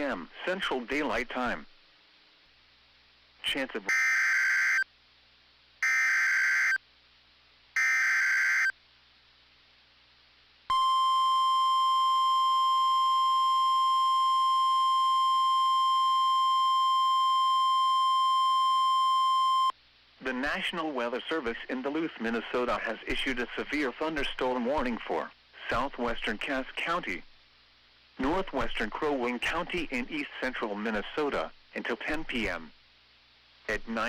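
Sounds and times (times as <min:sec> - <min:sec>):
steady warning alarm tone: 0:03.9 - 0:04.8, 0:05.8 - 0:06.8, 0:07.8 - 0:08.7.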